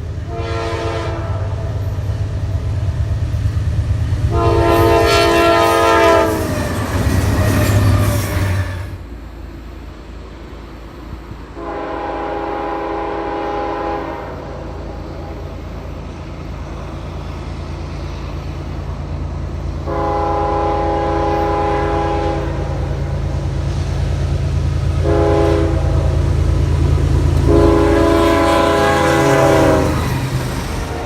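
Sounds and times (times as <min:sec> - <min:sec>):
locomotive rumble: 0:00.0 - 0:31.0
locomotive air horn blasts: 0:00.3 - 0:01.7, 0:04.3 - 0:06.6, 0:11.6 - 0:14.7, 0:19.8 - 0:23.0, 0:25.0 - 0:26.2, 0:27.4 - 0:30.2.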